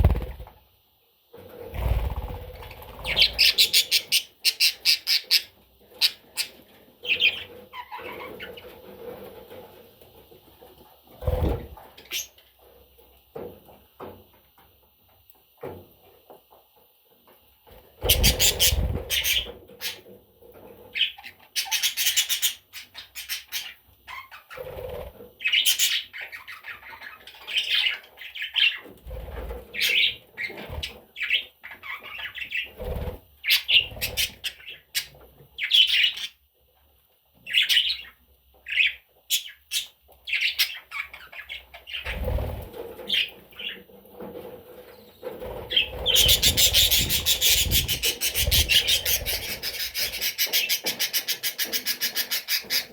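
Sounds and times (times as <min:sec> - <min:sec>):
budgerigar chirping and chattering: 0:03.0 - 0:08.4, 0:18.1 - 0:20.0, 0:21.0 - 0:24.6, 0:45.7 - 0:52.9.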